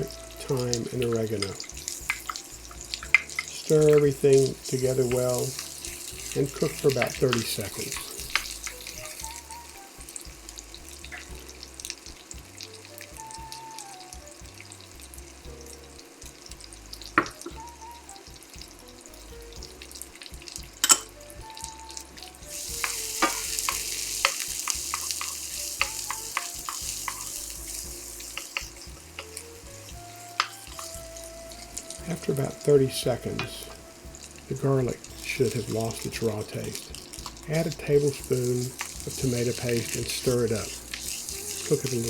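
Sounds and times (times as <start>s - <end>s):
food sizzling in oil: 0.0s - 42.0s
utensil knocking against pan: 22.6s - 29.4s.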